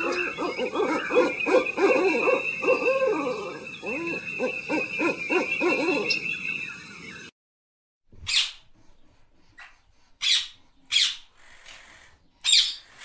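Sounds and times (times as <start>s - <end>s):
owl hooting: 0.0s - 6.6s.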